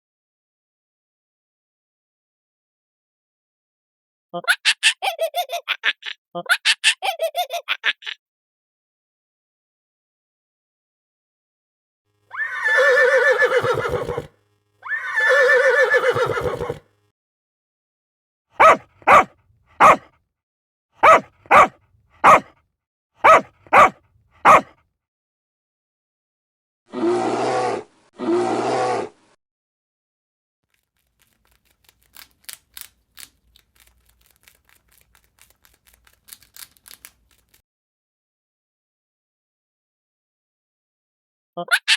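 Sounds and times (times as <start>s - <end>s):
horse whinnying: 12.3s - 16.8s
loud animal call: 12.3s - 16.8s, 18.6s - 20.1s, 21.0s - 22.5s, 23.2s - 24.7s, 26.9s - 29.3s
sharp clicks and crunches: 30.7s - 37.6s.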